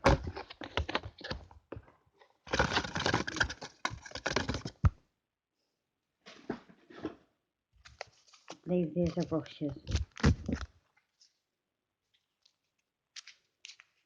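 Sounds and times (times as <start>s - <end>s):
packaging crackling and rustling: 2.5s - 4.8s.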